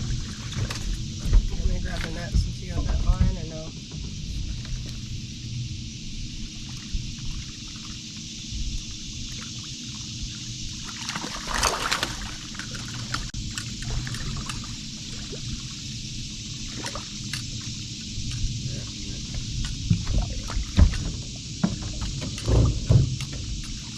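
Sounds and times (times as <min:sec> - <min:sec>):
water trickling and lapping: 0:00.0 - 0:23.9
wind rumble on microphone: 0:00.0 - 0:23.9
rush of water: 0:09.2 - 0:15.8, 0:16.5 - 0:23.0.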